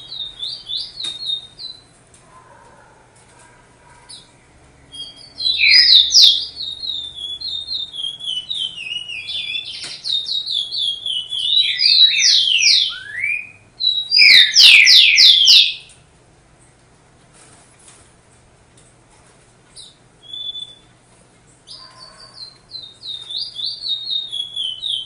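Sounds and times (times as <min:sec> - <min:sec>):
songbird singing: 0:00.0 - 0:02.0, 0:04.0 - 0:16.0, 0:19.8 - 0:25.0.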